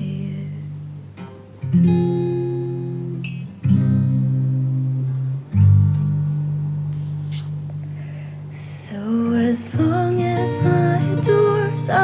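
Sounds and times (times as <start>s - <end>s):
guitar strummed chords: 9.8s - 12.0s.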